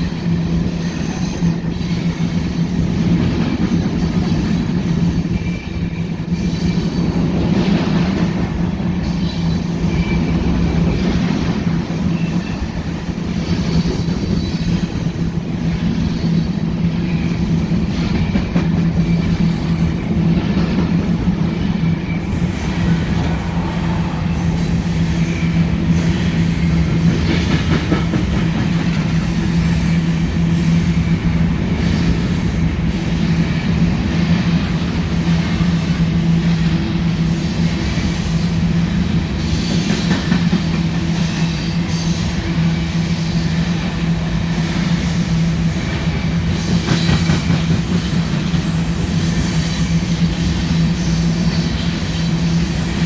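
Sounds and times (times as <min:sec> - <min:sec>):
train wheels rumbling on rails: 0:00.0 - 0:53.0
faint wheel squeals: 0:09.0 - 0:11.1, 0:21.0 - 0:26.6.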